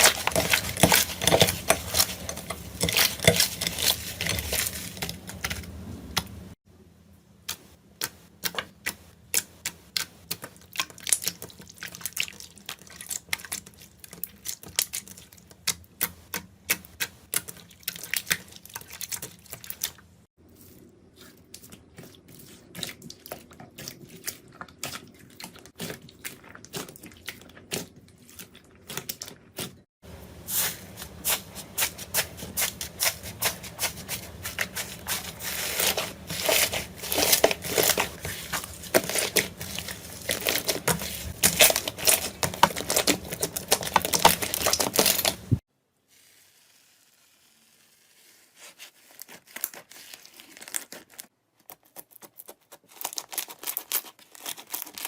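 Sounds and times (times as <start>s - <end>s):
slime crackling and popping: 34.6s - 45.6s.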